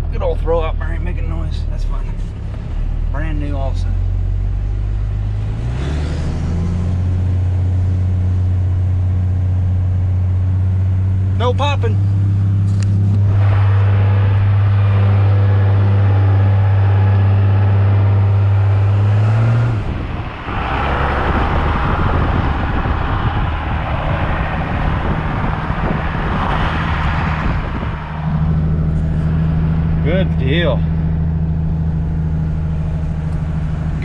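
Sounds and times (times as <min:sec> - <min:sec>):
diesel engine drone: 0:00.0 - 0:34.0
road and wind noise: 0:00.0 - 0:34.0.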